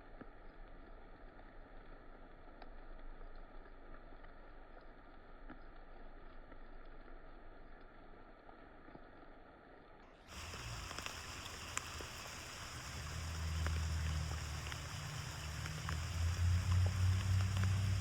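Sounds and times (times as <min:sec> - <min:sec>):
rain falling on a pond: 0:00.0 - 0:18.0
low rumble: 0:10.3 - 0:18.0.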